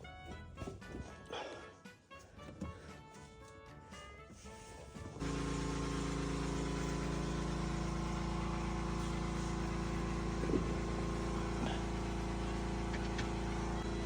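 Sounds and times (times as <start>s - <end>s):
car engine idling: 5.2s - 14.0s.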